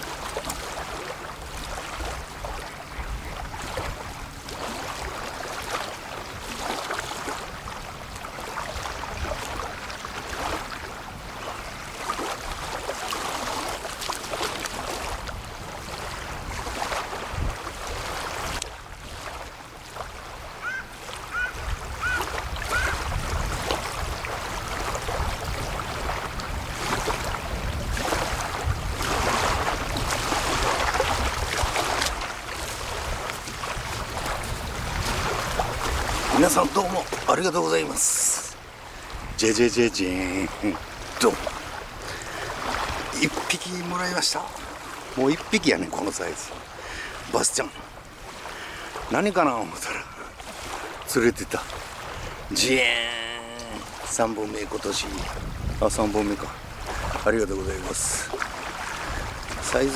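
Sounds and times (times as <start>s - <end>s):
water and wind rushing: 0.0s - 59.9s
short rising calls: 20.6s - 23.0s.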